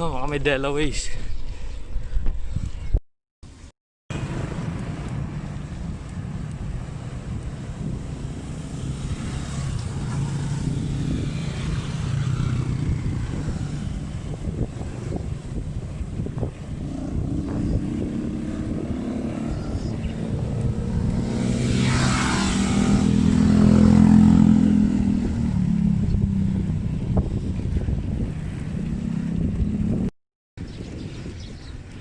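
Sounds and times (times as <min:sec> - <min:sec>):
wind rumble on microphone: 0:00.1 - 0:03.0, 0:04.2 - 0:32.0
vehicle engine passing: 0:16.7 - 0:30.1.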